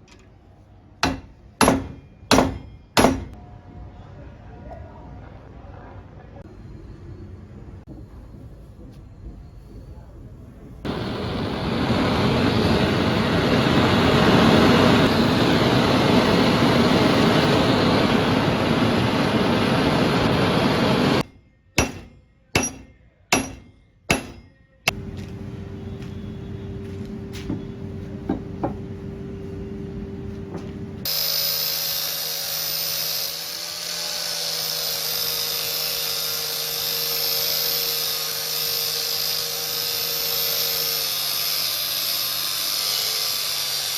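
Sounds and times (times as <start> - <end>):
sharp metal strikes: 1.0 - 3.4, 21.8 - 24.6
power tool grinding: 31.0 - 43.9
small motor tool whining: 31.0 - 43.9.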